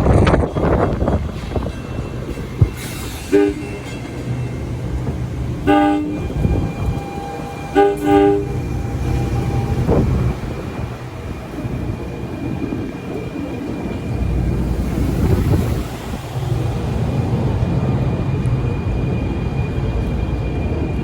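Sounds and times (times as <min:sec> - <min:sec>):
train rumbling on rails: 0:00.0 - 0:21.0
train air horn blasts: 0:03.2 - 0:03.9, 0:05.6 - 0:10.4.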